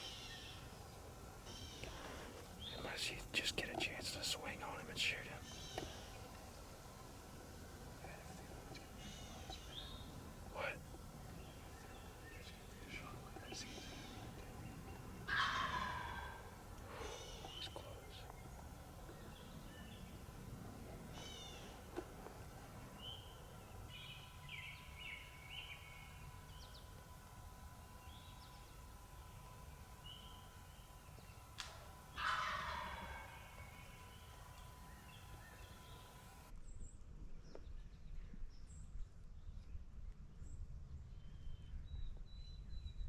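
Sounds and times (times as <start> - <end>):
small birds chirping: 0.0 - 36.5
wild turkey gobbling: 3.8 - 27.2, 29.9 - 36.4.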